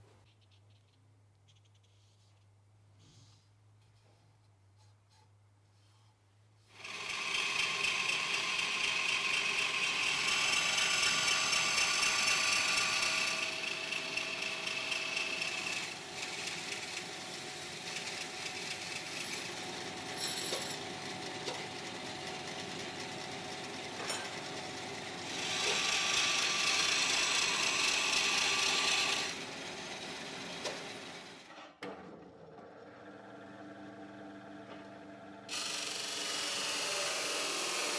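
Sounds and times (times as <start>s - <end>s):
power tool whining: 6.8s - 21.8s, 24.0s - 29.6s.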